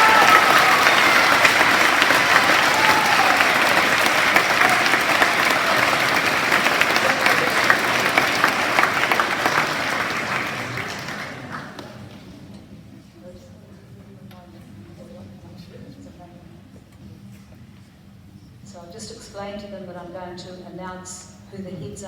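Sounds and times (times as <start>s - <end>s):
audience applauding: 0.0s - 12.2s.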